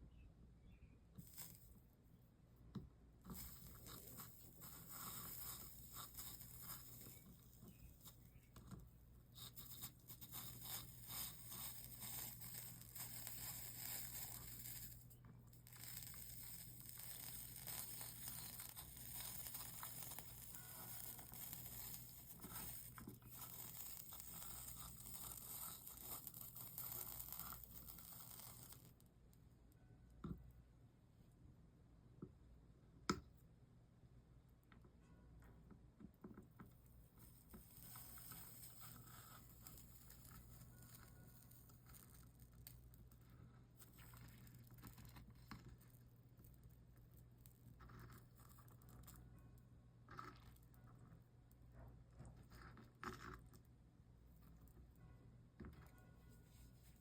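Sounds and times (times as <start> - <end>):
soldering flux crackling and sizzling: 1.2 - 1.8, 3.2 - 29.1, 37.1 - 53.6.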